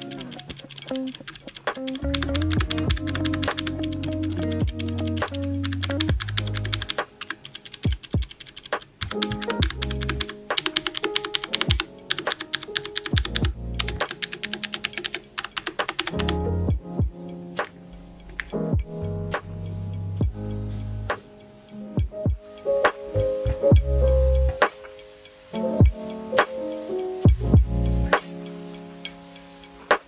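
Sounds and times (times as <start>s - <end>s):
mechanical keyboard typing: 0.0s - 16.4s.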